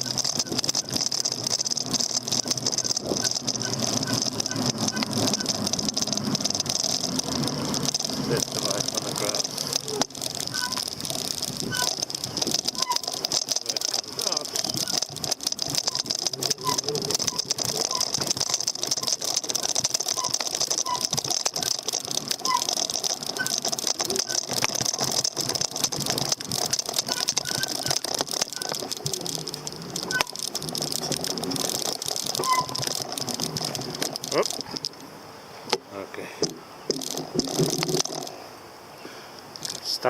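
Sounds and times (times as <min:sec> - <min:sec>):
bike and camera rattling: 0:00.0 - 0:38.5, 0:39.4 - 0:40.0
steady high hiss: 0:33.0 - 0:40.0.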